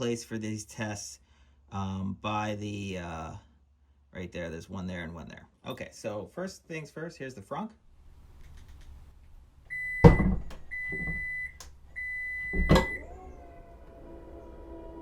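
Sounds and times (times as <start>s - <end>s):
car trunk thunks: 10.0s - 11.4s, 12.4s - 13.4s.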